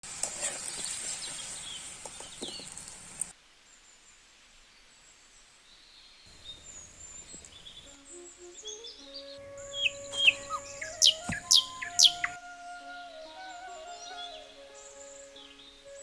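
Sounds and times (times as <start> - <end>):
birds chirping and calling: 0.5 - 3.3, 6.3 - 12.4.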